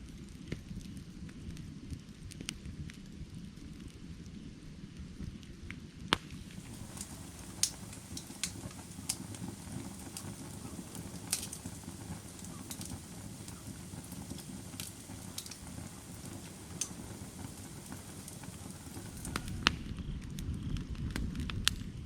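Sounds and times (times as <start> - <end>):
low rumble of flame: 0.0 - 22.0
wood popping and crackling: 6.1 - 22.0.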